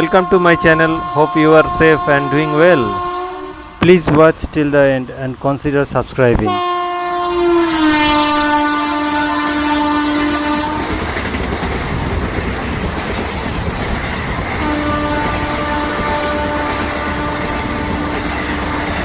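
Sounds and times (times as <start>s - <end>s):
locomotive horn: 0.0s - 3.8s, 6.5s - 11.0s, 14.6s - 19.0s
train wheels clacking on track: 10.2s - 19.0s.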